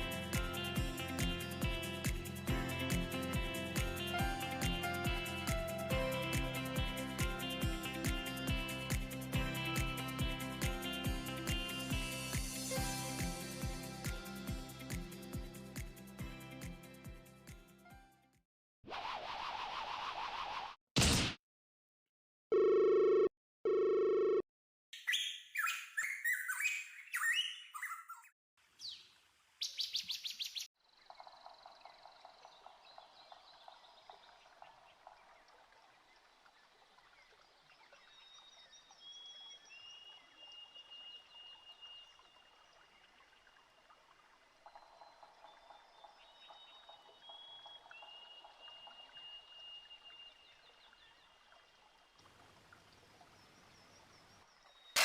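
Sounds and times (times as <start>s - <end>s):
birds chirping and singing: 25.0s - 30.7s.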